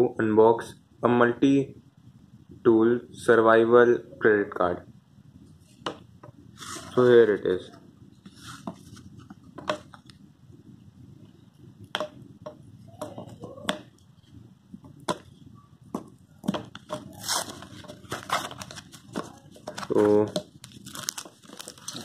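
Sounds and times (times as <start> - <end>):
packaging clicks and crackles: 16.7 - 22.0.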